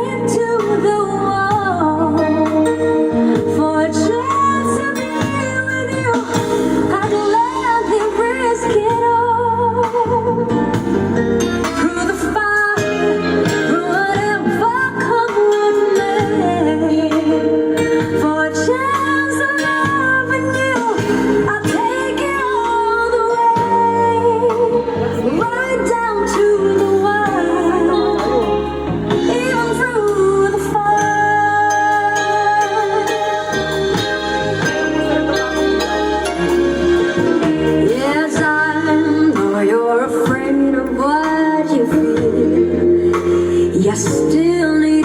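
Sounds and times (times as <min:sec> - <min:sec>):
song through loudspeaker: 0:00.0 - 0:45.0
steady bass line: 0:00.0 - 0:45.0
woman singing long notes: 0:21.7 - 0:43.2.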